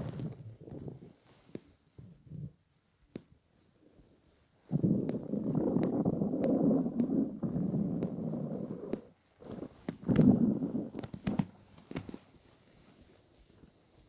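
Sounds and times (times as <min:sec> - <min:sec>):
stomach growling: 0:00.0 - 0:01.2, 0:04.6 - 0:12.2.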